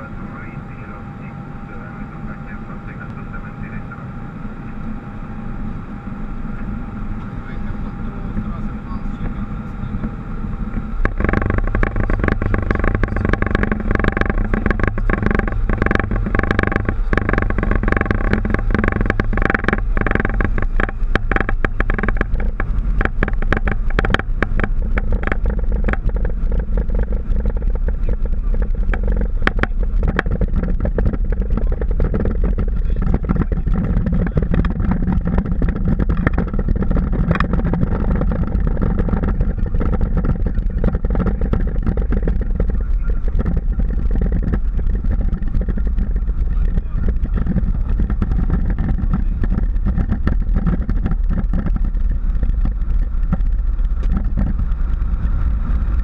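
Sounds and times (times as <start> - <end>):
jet engines roaring: 0.0 - 17.2
rolling aircraft knocks and rattles: 0.0 - 56.0.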